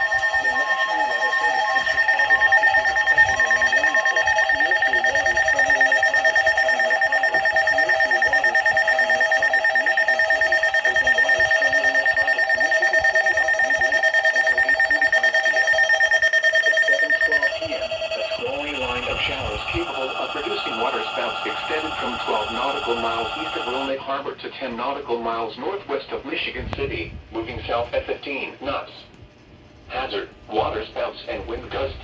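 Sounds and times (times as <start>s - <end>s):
high electronic alert tone: 0.0s - 23.9s
low pulsing electronic tone: 0.0s - 23.9s.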